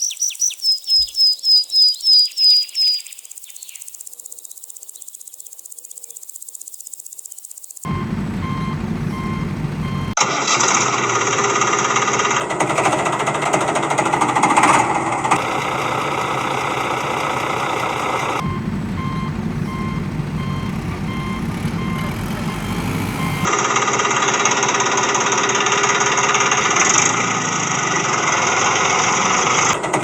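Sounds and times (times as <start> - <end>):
reversing alarm beeping: 7.9 - 10.2, 15.4 - 23.5
heavy vehicle engine running: 7.9 - 24.0.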